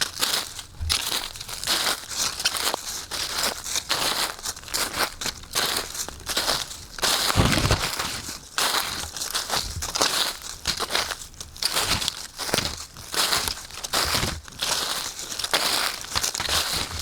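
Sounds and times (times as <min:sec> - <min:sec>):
footsteps crunching on dry leaves: 0:00.0 - 0:17.0.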